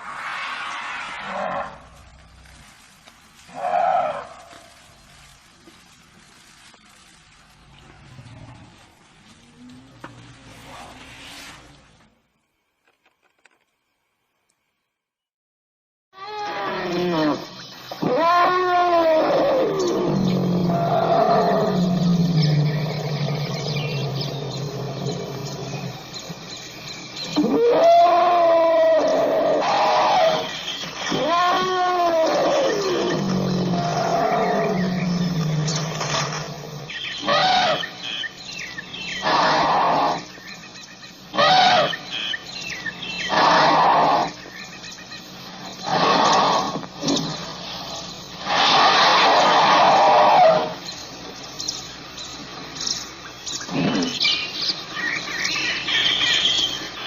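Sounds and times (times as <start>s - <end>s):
elephant calling: 16.2s - 25.9s, 27.2s - 40.4s, 41.3s - 44.5s, 45.1s - 50.9s.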